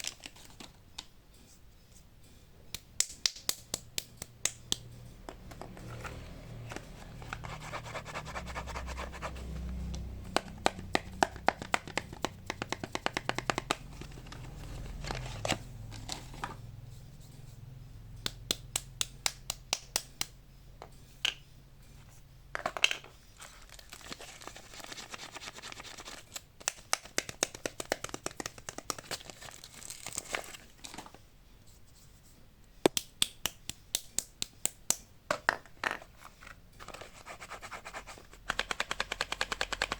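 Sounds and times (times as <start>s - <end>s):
sharp clicks and taps: 9.9s - 14.4s, 38.4s - 39.9s
wrappers crinkling and tearing: 23.5s - 26.4s, 29.0s - 31.0s.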